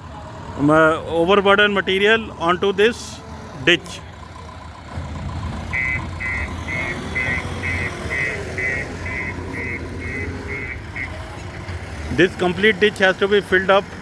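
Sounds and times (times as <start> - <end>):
diesel engine under load: 0.0 - 14.0
reversing alarm beeping: 5.7 - 11.2.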